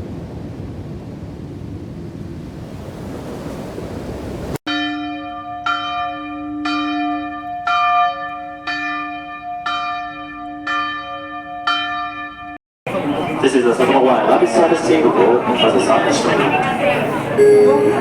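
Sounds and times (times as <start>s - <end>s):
church bell tolling: 4.7s - 13.4s, 17.3s - 18.0s.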